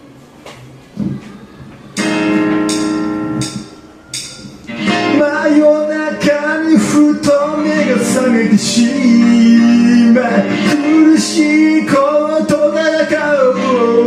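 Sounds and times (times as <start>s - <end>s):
guitar chords strummed: 2.0s - 14.0s
person singing: 4.7s - 14.0s.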